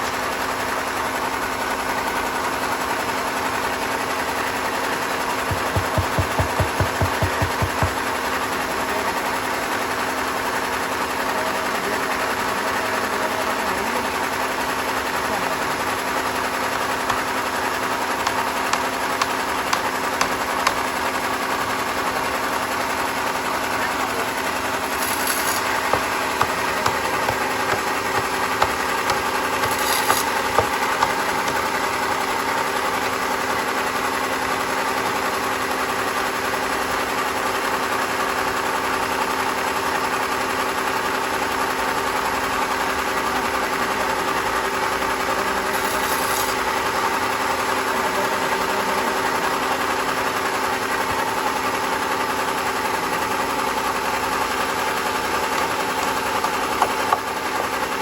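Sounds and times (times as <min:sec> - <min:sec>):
sawmill machinery humming: 0:00.0 - 0:35.6, 0:42.4 - 0:58.0
sharp knocks: 0:05.5 - 0:08.1, 0:25.0 - 0:31.7, 0:55.5 - 0:57.3.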